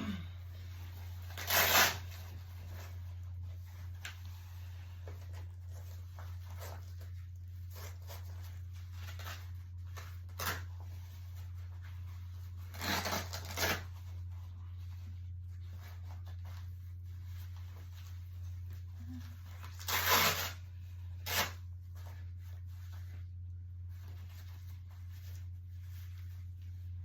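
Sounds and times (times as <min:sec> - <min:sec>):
velcro ripping: 0:00.9 - 0:03.0, 0:05.7 - 0:14.4, 0:18.7 - 0:22.2.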